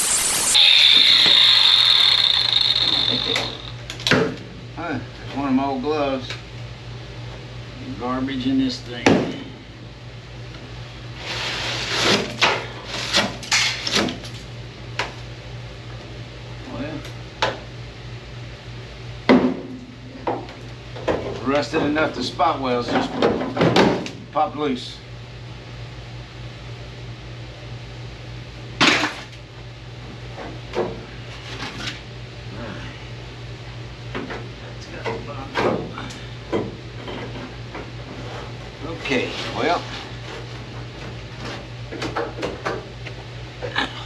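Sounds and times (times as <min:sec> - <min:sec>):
steady low hum: 0:00.0 - 0:05.3.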